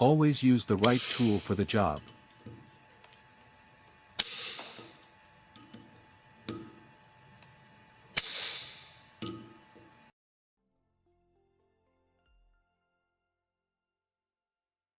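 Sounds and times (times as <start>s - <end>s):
torque wrench clicking: 4.2s - 5.0s.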